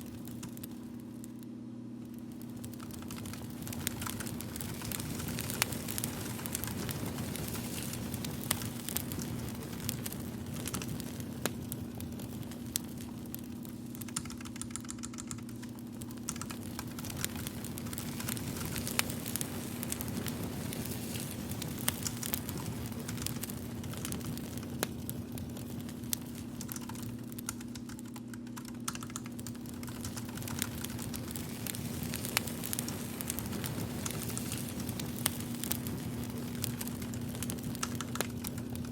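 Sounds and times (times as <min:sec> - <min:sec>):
crackling fire: 0:00.0 - 0:38.9
steady low hum: 0:00.0 - 0:38.9
typing on computer keyboard: 0:14.0 - 0:15.6, 0:26.6 - 0:30.6.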